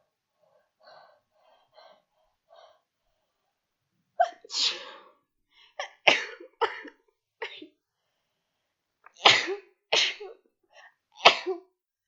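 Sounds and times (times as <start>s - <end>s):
woman breathing: 0.4s - 3.5s.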